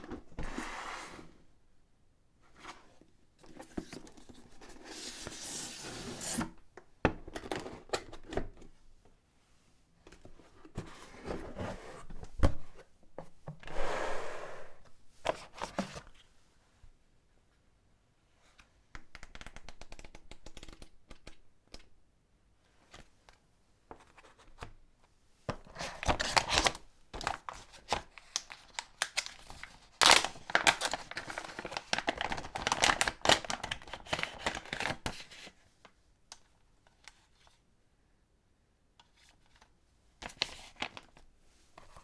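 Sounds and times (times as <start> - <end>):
packaging crinkling and tearing: 26.0 - 35.0.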